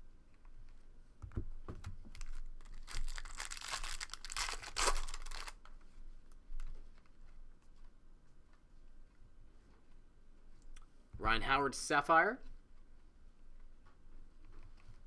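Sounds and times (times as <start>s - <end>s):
wrapper tearing and crinkling: 2.1s - 5.7s.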